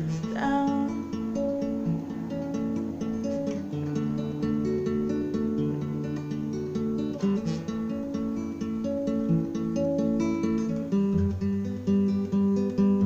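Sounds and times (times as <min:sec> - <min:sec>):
acoustic guitar strumming: 0:00.0 - 0:13.0.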